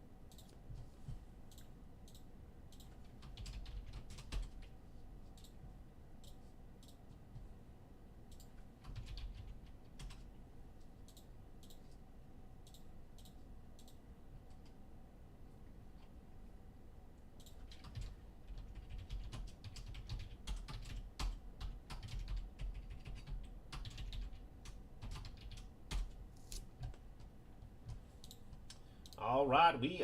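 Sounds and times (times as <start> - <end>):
computer keyboard typing: 1.5 - 4.8, 8.3 - 10.3, 17.4 - 26.2.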